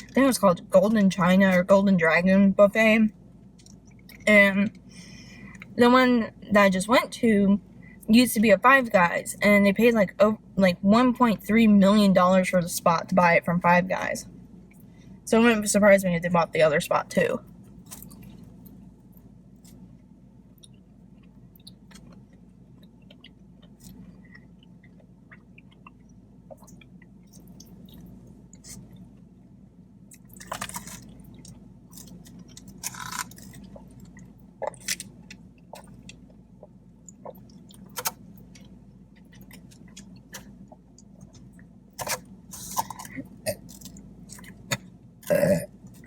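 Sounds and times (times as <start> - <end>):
faint low hum: 0.0 - 46.0
person chewing food: 17.7 - 18.8, 19.6 - 29.3, 30.1 - 46.0.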